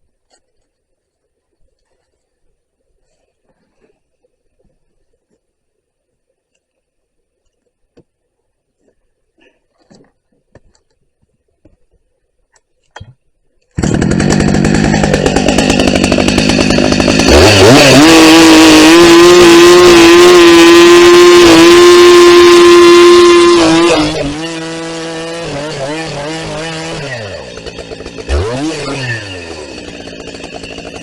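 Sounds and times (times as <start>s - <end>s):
chainsaw running and revving: 13.8s - 31.0s.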